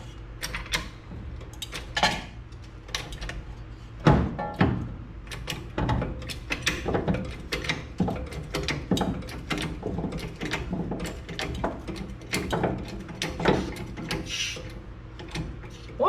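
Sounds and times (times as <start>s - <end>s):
floor jack clicking and clanking: 4.0s - 15.9s.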